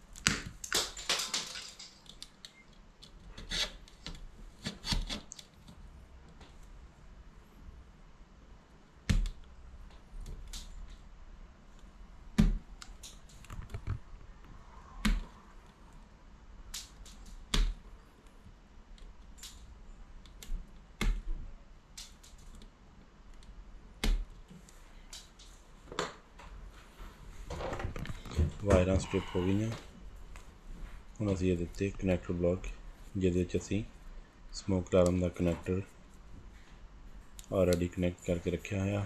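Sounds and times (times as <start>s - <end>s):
tools stripping cable insulation: 1.8s - 5.8s.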